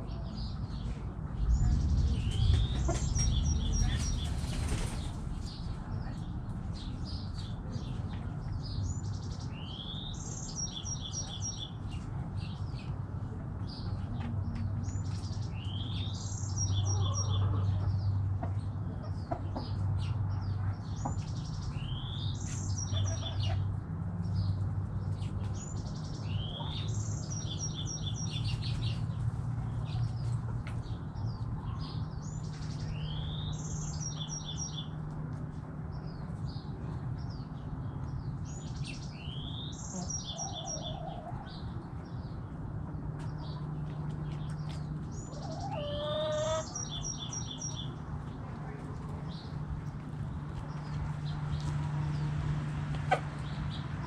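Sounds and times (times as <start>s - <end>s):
low steady rumble: 0.0s - 10.0s
songbird singing: 0.0s - 54.0s.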